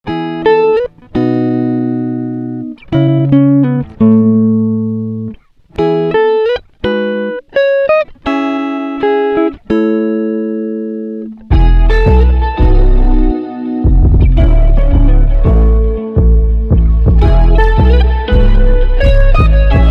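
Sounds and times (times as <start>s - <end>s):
plucked ringing melody: 9.7s - 19.9s.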